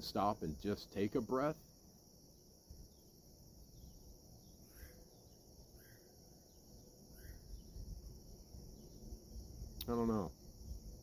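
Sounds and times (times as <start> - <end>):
insects chirring: 0.0 - 11.0
short bird chirps: 3.8 - 6.2, 7.1 - 7.8.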